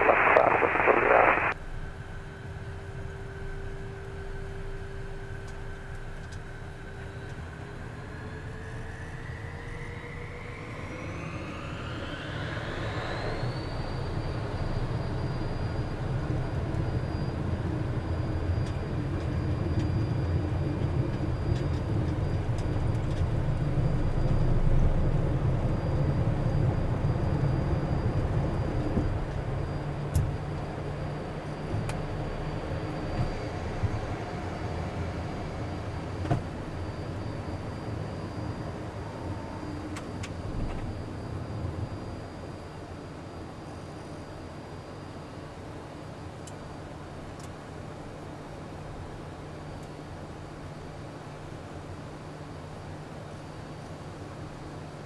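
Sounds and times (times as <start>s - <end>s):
jet engines whining: 0.0s - 1.6s, 7.5s - 43.1s
low rumble: 0.0s - 1.6s
radio noise burst: 0.0s - 1.6s.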